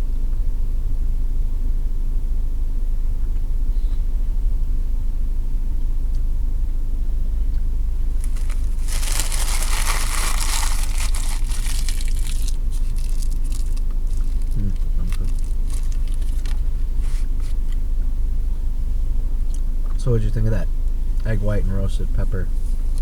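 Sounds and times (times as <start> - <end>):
food wrapper crinkling: 8.2 - 17.5
car idling heard from inside: 12.4 - 23.0.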